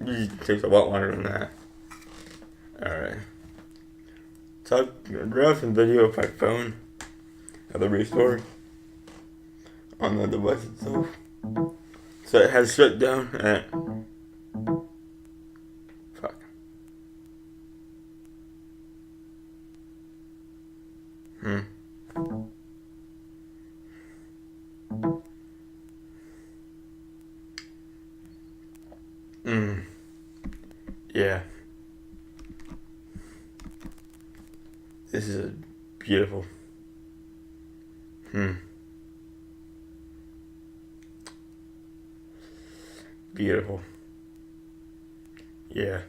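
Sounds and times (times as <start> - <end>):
steady low hum: 0.0 - 46.0
plucked bass notes: 10.8 - 11.8, 13.7 - 14.9, 22.2 - 22.5, 24.9 - 25.2
short vocal sound: 21.4 - 21.8, 29.4 - 30.0.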